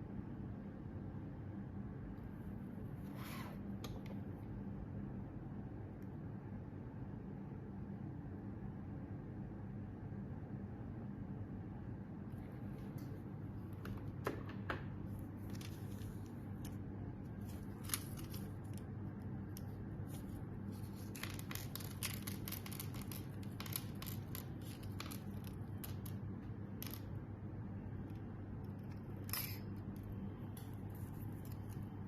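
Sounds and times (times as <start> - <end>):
low electrical hum: 0.0 - 32.0.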